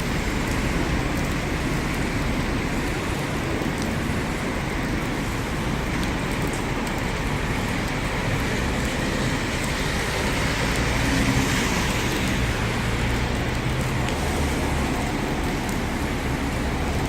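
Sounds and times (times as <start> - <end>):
heavy rain pouring: 0.0 - 17.0
road traffic hum: 0.0 - 17.0.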